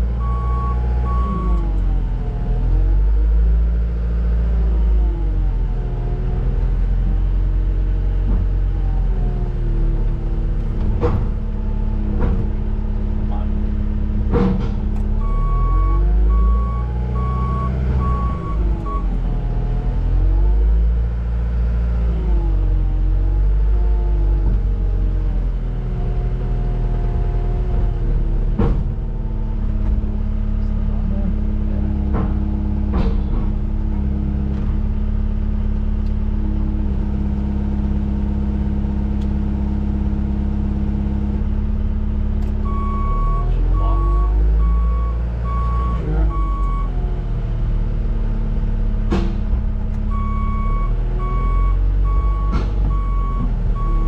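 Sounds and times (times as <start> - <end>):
wheel loader diesel engine: 0.0 - 54.0
reversing alarm beeps: 0.2 - 1.7, 15.2 - 19.1, 42.7 - 46.9, 50.1 - 54.0.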